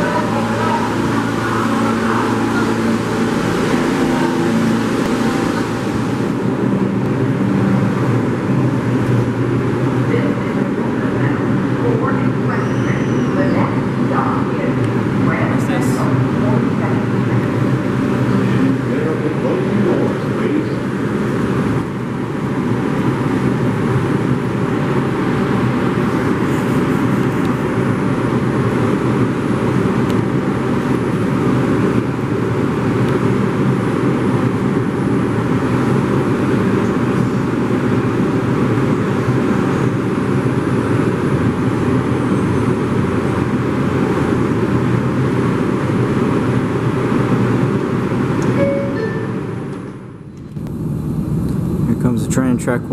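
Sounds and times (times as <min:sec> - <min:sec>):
subway train running: 0:00.0 - 0:52.9.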